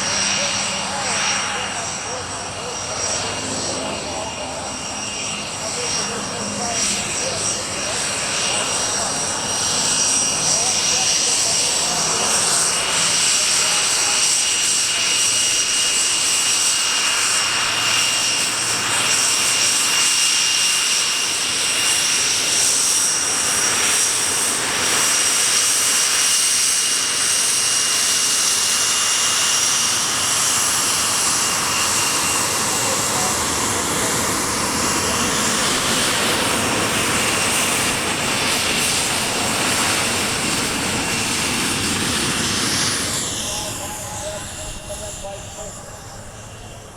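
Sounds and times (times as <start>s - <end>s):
aircraft engines droning: 0.0s - 46.9s.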